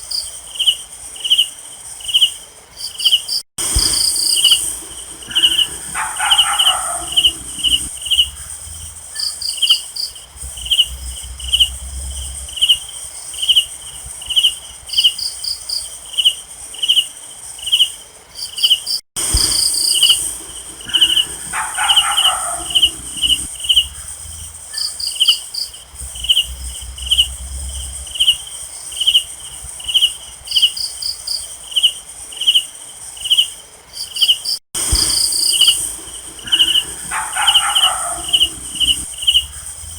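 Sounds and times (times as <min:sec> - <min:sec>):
crickets chirping: 0:00.0 - 0:39.9
high insect drone: 0:00.1 - 0:39.9
short fast insect trills: 0:02.2 - 0:16.4, 0:17.0 - 0:32.7, 0:34.4 - 0:39.9
low animal call: 0:03.6 - 0:09.4, 0:10.2 - 0:13.0, 0:19.2 - 0:25.0, 0:25.8 - 0:28.4, 0:34.8 - 0:39.9.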